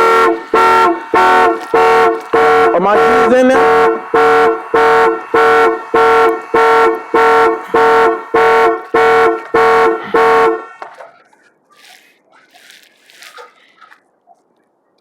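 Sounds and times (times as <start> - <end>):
car horn alarm honking: 0.0 - 11.0.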